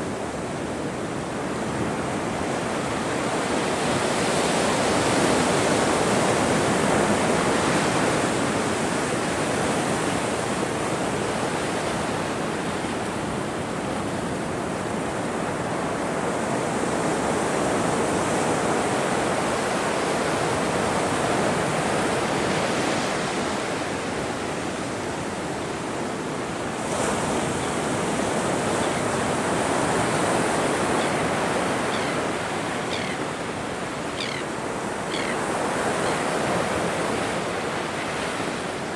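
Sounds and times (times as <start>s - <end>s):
ocean surf washing ashore: 0.0s - 38.9s.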